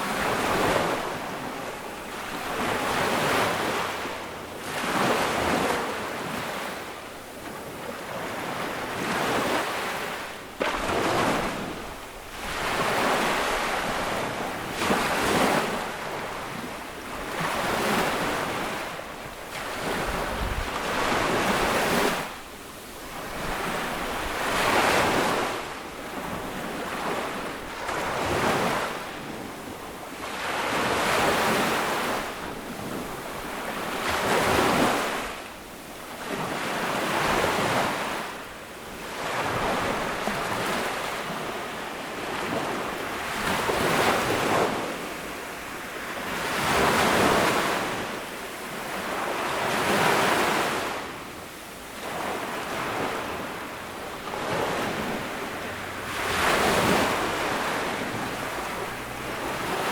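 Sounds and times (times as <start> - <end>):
small waves breaking on beach: 0.0 - 59.9
wind on microphone: 19.6 - 29.8.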